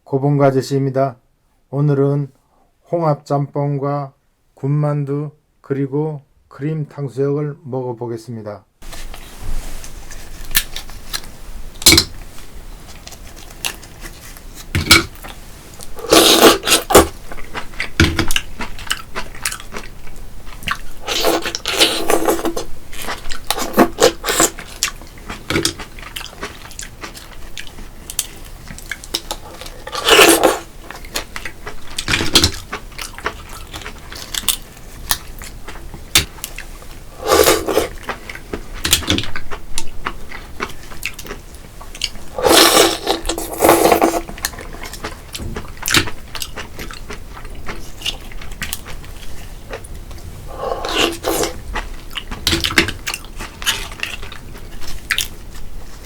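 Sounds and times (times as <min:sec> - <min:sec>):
person chewing and crunching: 0:12.9 - 0:56.0.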